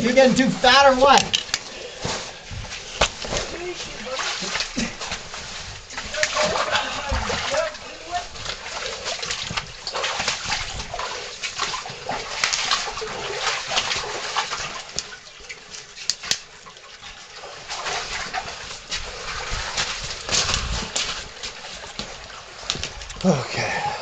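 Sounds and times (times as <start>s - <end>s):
water splashing and sloshing: 0.0s - 24.0s
knocks and scrapes against rock: 19.4s - 23.2s.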